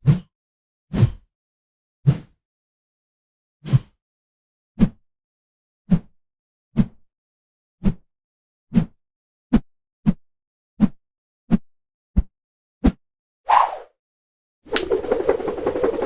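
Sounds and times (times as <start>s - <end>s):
quick whooshes: 14.7s - 16.0s.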